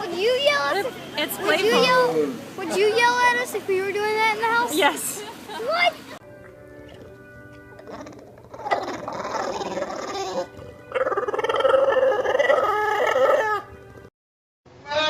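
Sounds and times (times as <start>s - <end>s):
dog howling: 7.8s - 13.7s.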